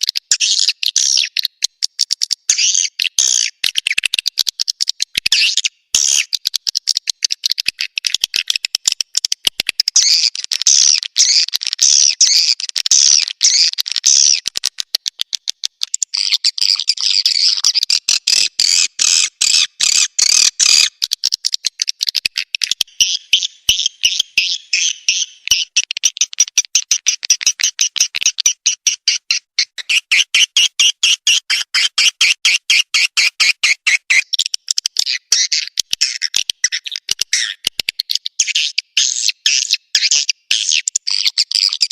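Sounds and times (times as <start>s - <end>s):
swiftlet chirps and twitters: 22.4s - 37.6s.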